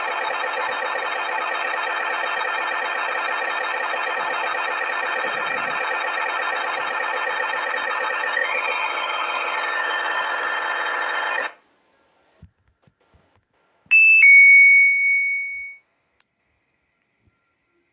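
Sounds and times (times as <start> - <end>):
electronic alarm tone: 0.0 - 11.5, 13.9 - 15.8
two-note doorbell chime: 13.9 - 15.8.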